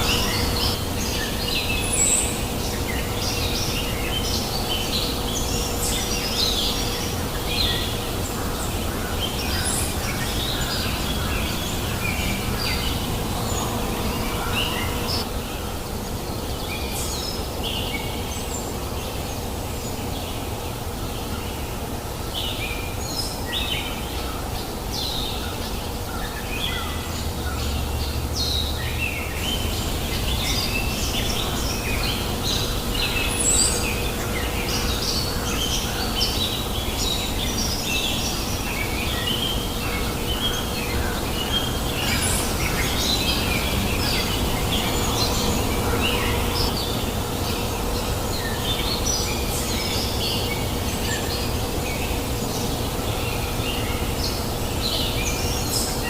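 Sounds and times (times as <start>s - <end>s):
river babbling: 0.0s - 5.5s, 27.0s - 49.2s
birds chirping and twittering: 0.0s - 56.0s.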